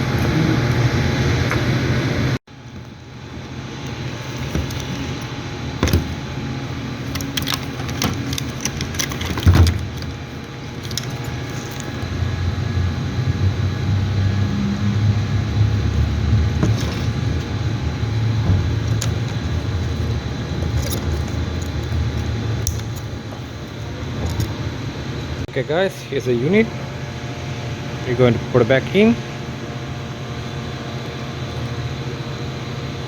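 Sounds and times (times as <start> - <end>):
steady low rumble: 0.0 - 25.5
parts clicking: 2.7 - 12.0, 16.5 - 24.6.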